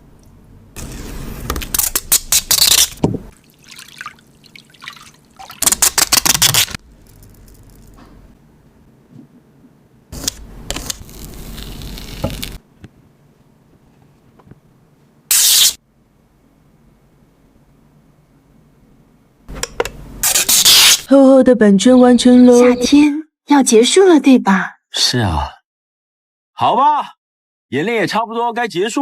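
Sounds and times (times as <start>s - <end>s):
liquid sloshing in a shaker: 3.3s - 5.8s.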